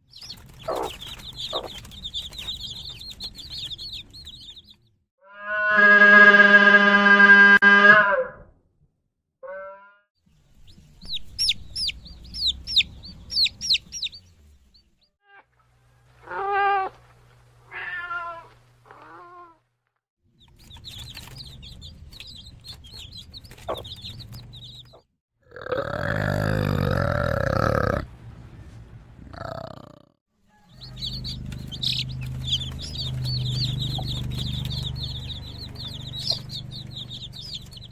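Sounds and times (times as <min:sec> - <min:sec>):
high animal chirping: 0:00.1 - 0:04.8, 0:11.0 - 0:14.3, 0:20.7 - 0:25.0, 0:30.8 - 0:37.9
pitched animal calls: 0:00.6 - 0:03.8, 0:16.2 - 0:17.1, 0:25.5 - 0:28.1
long loud animal call: 0:05.2 - 0:08.3
low rumble: 0:10.5 - 0:15.0, 0:30.9 - 0:37.9.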